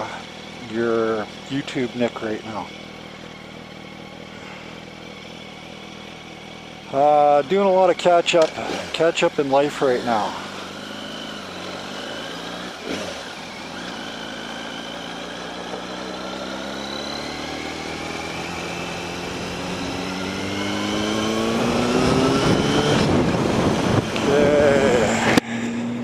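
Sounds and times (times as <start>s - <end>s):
motorcycle engine accelerating: 0.0s - 26.0s
wind rush over microphone: 21.6s - 25.4s.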